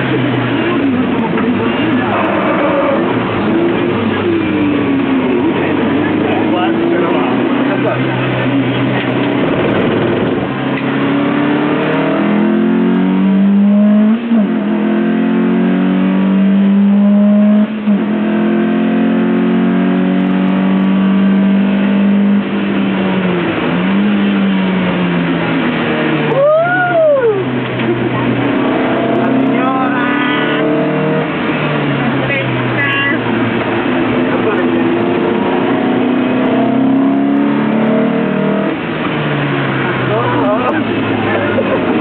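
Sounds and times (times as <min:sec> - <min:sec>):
car engine accelerating: 0:00.0 - 0:42.0
road noise: 0:00.0 - 0:42.0.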